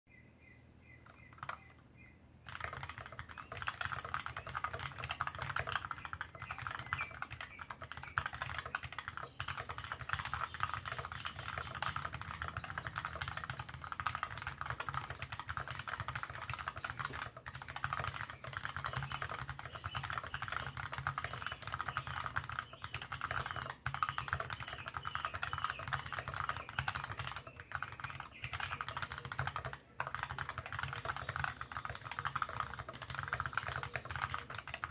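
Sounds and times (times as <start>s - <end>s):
fast mechanical keyboard typing: 1.0s - 1.8s, 2.4s - 34.9s.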